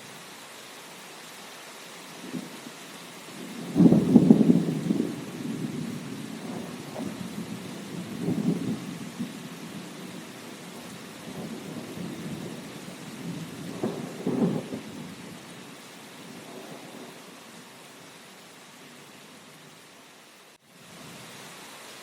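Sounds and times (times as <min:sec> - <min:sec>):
steady rain: 0:00.0 - 0:22.0
thunder rumbling: 0:03.4 - 0:17.4.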